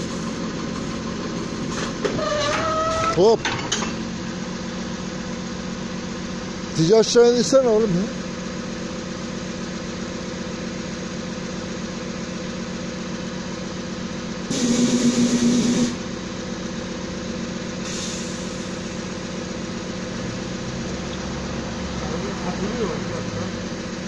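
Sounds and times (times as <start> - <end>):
drilling rig engine running: 0.0 - 24.0
air hissing: 14.5 - 16.0, 17.8 - 19.2.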